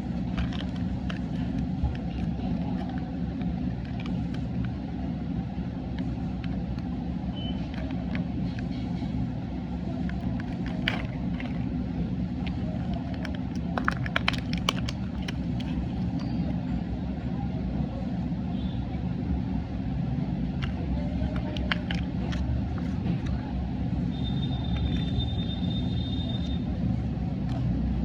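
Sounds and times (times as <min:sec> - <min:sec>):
sharp clicks and crackles: 0:00.0 - 0:04.8, 0:05.9 - 0:09.0, 0:09.8 - 0:11.8, 0:12.4 - 0:16.5, 0:20.6 - 0:23.5, 0:24.5 - 0:26.6, 0:27.4 - 0:27.8.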